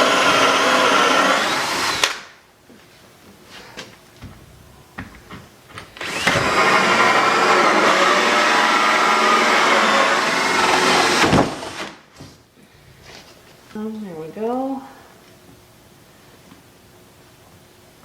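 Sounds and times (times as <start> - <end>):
power drill drilling into wood: 0.0 - 2.2, 6.0 - 12.0.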